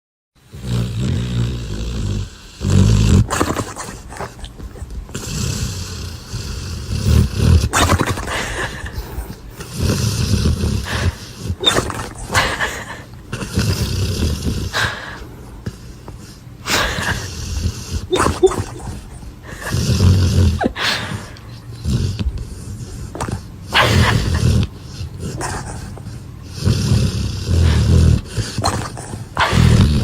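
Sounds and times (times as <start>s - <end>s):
dog snoring: 0.4s - 30.0s
dog snorting: 0.5s - 30.0s.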